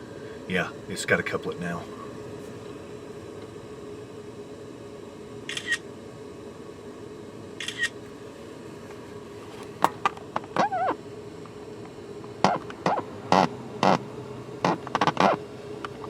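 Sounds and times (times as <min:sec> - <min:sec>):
steady low hum: 0:00.0 - 0:16.0
camera shutter double click: 0:05.5 - 0:05.8, 0:07.6 - 0:08.0.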